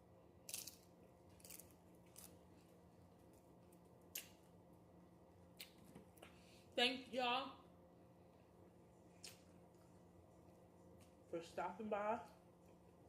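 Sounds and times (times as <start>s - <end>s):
crunching tortilla chips: 0.4s - 2.6s.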